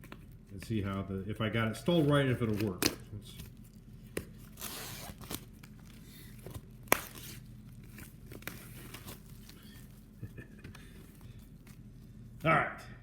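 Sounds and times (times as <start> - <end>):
paper and cardboard rustling: 1.7 - 12.2.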